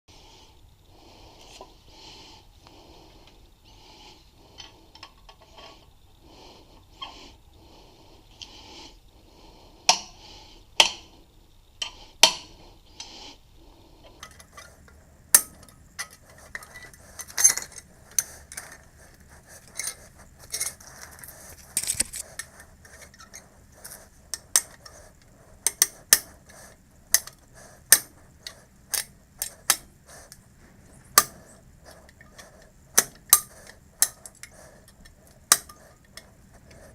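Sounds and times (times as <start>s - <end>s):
metal tools clinking: 15.4s - 18.8s, 19.6s - 22.2s.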